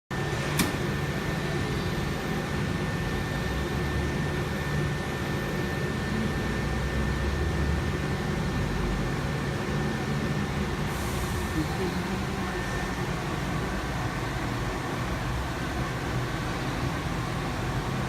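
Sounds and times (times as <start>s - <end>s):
machinery low rumble: 0.2s - 18.0s
sharp click: 0.6s - 0.8s.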